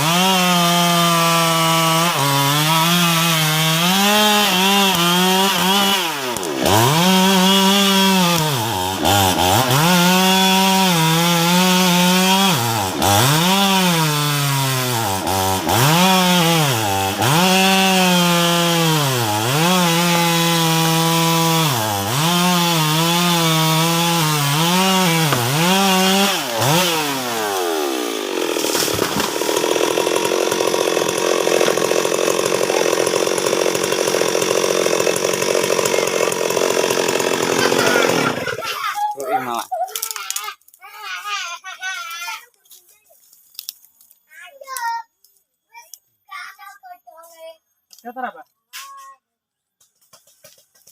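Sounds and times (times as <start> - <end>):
chainsaw cutting wood: 0.0 - 40.8
chainsaw idling roughly: 20.7 - 38.7.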